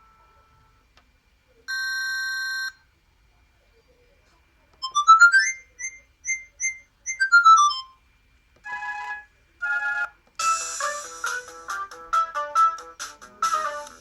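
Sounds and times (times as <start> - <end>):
phone ringtone electronic notes: 4.8 - 7.9
polyphonic ringtone tune: 4.8 - 7.9.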